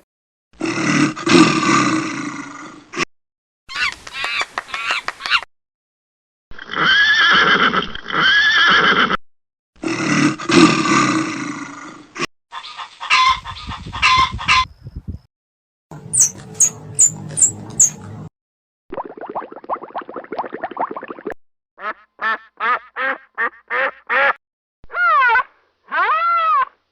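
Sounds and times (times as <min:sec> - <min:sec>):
animal calls: 0:16.1 - 0:18.0, 0:24.9 - 0:26.8
short high chirps: 0:16.1 - 0:18.0.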